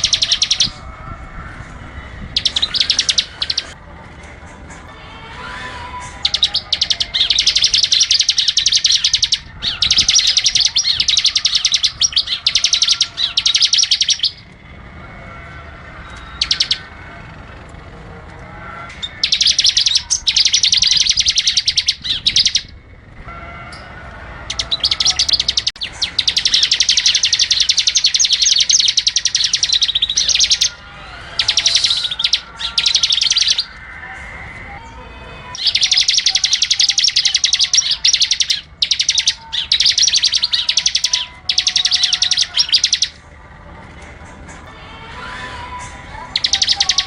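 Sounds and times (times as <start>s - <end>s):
songbird chattering song: 0.0s - 0.9s, 2.3s - 3.8s, 6.0s - 14.5s, 16.1s - 16.9s, 18.9s - 22.8s, 24.5s - 33.8s, 35.6s - 43.2s, 46.2s - 47.0s.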